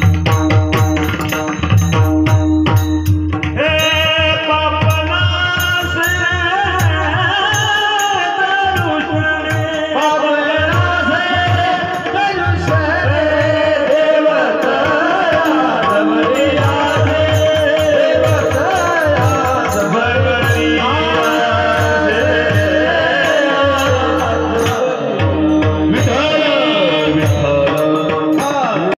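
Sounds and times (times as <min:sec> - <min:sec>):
hand drum beat: 0:00.0 - 0:07.8
person singing devotional melody: 0:00.0 - 0:29.0.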